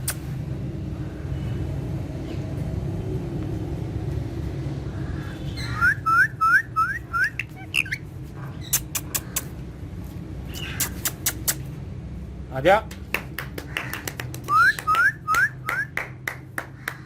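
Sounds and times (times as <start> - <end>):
parrot chirping: 5.3 - 9.5.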